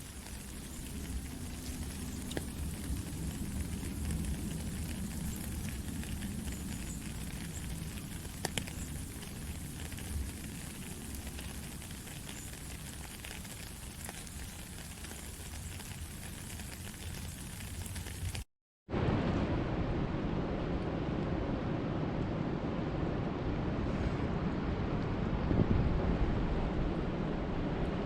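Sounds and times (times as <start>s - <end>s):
rain falling: 0.0s - 19.6s.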